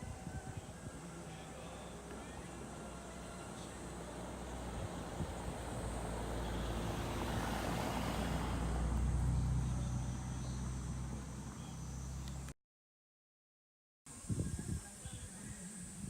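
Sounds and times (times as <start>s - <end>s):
motor engine passing by: 1.6s - 12.5s.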